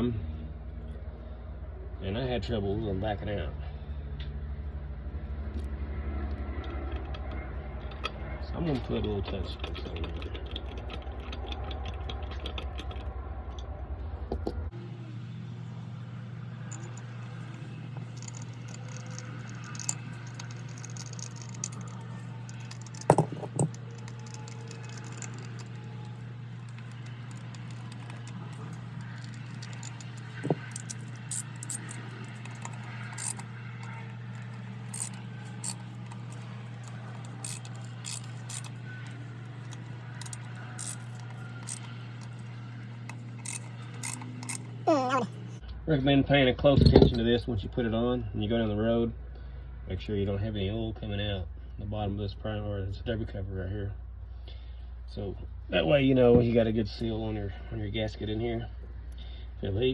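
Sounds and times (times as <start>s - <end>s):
steady low hum: 0.0s - 59.9s
metal clinks of bolts and tools: 6.5s - 13.6s, 16.7s - 44.8s, 46.8s - 47.2s.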